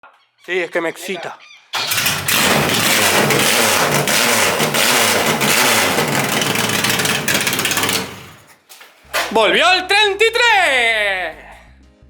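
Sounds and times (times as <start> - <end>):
car engine revving: 1.8 - 8.5.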